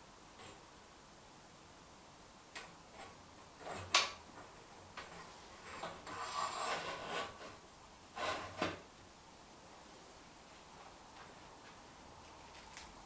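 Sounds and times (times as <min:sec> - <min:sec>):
scraping rub: 0:05.2 - 0:07.6.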